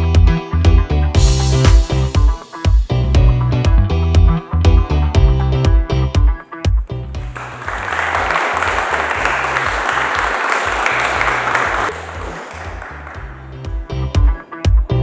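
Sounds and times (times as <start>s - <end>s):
electronic dance music: 0.0s - 15.0s
crowd applauding: 7.2s - 13.8s.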